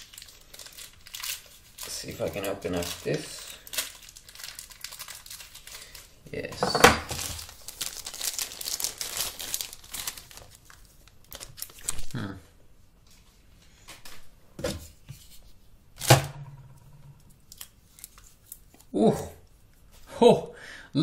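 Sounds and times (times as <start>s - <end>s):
plastic packaging crinkling: 0.0s - 12.3s, 17.4s - 18.9s.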